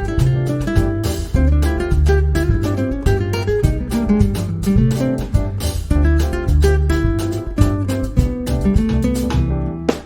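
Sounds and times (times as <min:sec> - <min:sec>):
acoustic guitar tune: 0:00.0 - 0:10.0.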